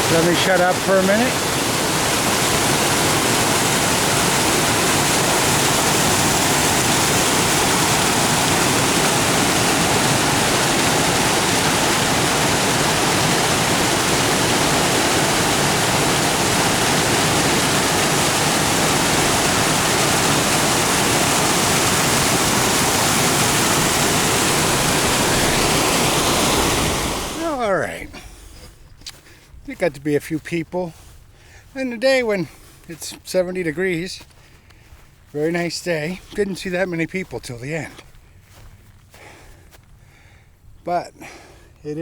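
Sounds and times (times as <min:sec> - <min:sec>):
brook rushing over rocks: 0:00.0 - 0:28.4.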